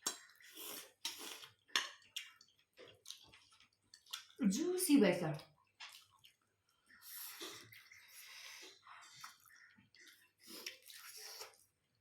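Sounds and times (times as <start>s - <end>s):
chewing: 0.0s - 4.4s, 5.3s - 12.0s
noodle slurping: 6.9s - 11.7s
person breathing: 7.0s - 8.8s.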